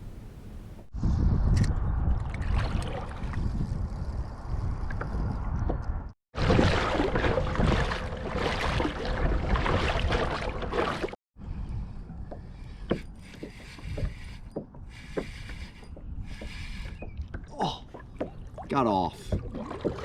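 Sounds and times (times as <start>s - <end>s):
wind on microphone: 0.0s - 10.6s
water against a hull: 2.2s - 11.2s, 12.3s - 20.0s.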